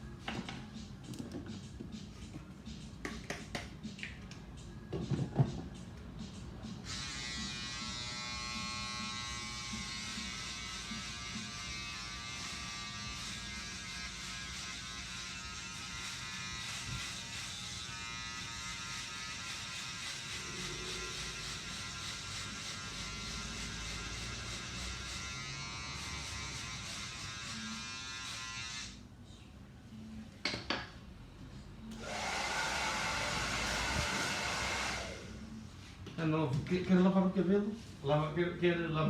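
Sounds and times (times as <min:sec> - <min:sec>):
electric hair clippers buzzing: 0:06.8 - 0:29.0, 0:32.0 - 0:35.2.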